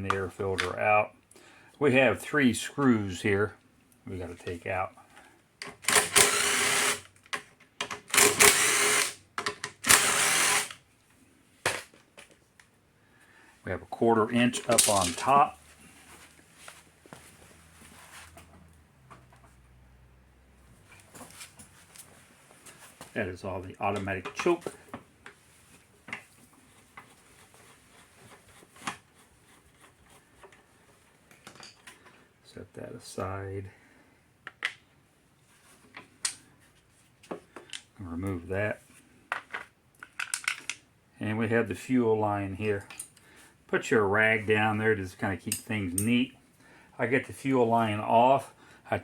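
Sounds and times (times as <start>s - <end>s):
power drill running: 5.9s - 7.1s, 8.1s - 9.2s, 9.8s - 10.8s
metal parts clicking and knocking: 14.5s - 15.4s, 39.3s - 40.8s.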